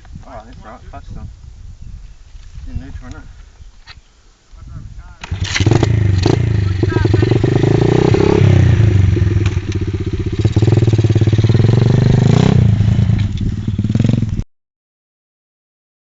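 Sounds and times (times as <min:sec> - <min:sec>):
motorbike engine revving: 0:05.2 - 0:14.4.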